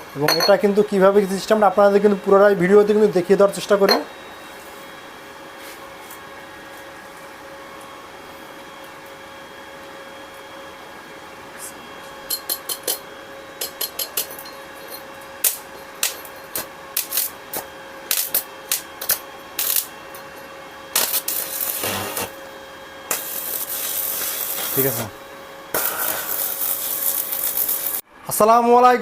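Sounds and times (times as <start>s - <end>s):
welder electrical hum: 0.0s - 29.0s
arc welding crackling: 15.4s - 20.0s, 20.9s - 28.0s.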